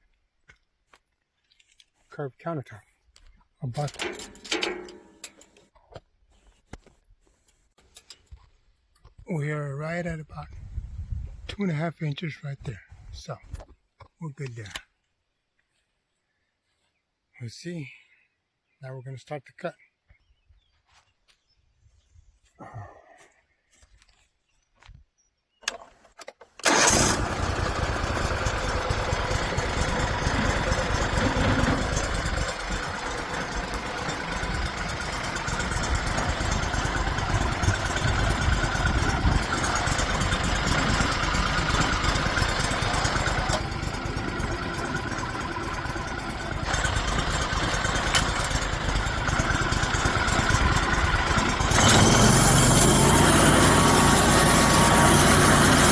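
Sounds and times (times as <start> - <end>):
small gas engine running: 3.8 - 5.4, 26.6 - 55.9.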